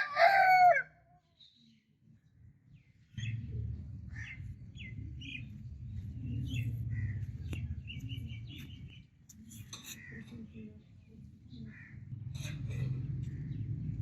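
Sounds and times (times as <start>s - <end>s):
small songbirds chirping: 1.3s - 11.9s
steady low rumble: 2.1s - 14.0s.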